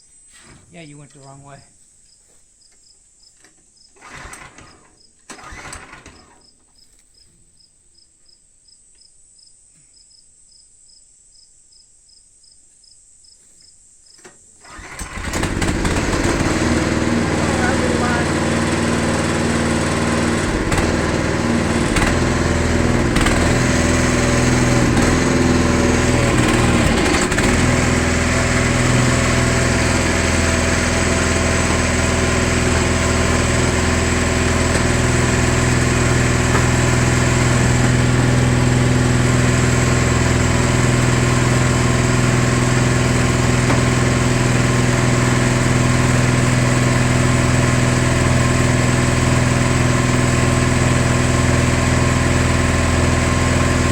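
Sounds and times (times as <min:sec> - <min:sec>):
hydraulic power unit running: 0:04.0 - 0:06.3, 0:14.6 - 0:53.9.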